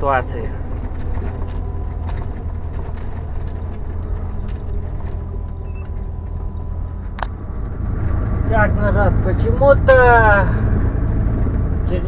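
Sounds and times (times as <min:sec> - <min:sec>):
lorry engine drone: 0:00.0 - 0:12.0
road noise: 0:00.0 - 0:12.0
short rising squeak: 0:01.6 - 0:06.7.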